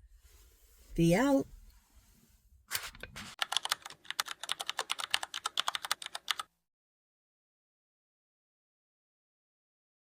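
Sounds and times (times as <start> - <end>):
rapid sharp clicks: 3.4 - 6.5.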